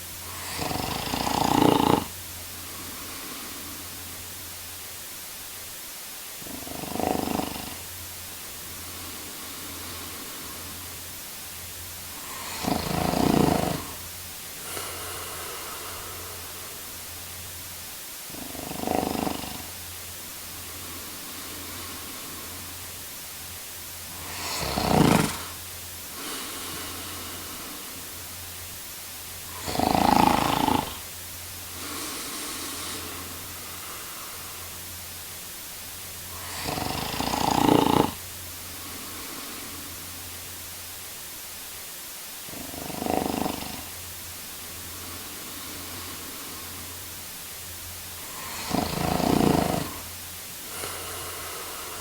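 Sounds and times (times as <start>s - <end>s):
faint breaths: 0.0s - 41.2s, 41.8s - 52.0s
steady low hum: 0.0s - 52.0s
man snoring: 0.2s - 4.3s, 6.4s - 7.9s, 8.7s - 11.0s, 12.1s - 17.1s, 18.3s - 19.8s, 20.5s - 22.8s, 24.1s - 28.3s, 29.4s - 34.8s, 36.3s - 40.2s, 42.4s - 44.0s, 44.8s - 47.1s, 48.2s - 52.0s.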